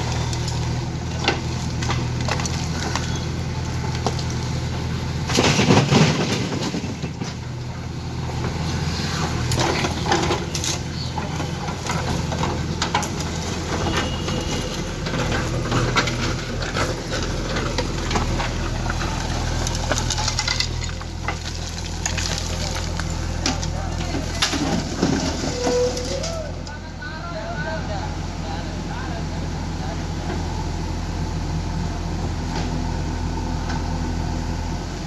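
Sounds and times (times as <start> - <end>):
debris crunching and cracking: 0.0 - 7.6, 9.3 - 26.5
diesel engine running: 0.0 - 35.0.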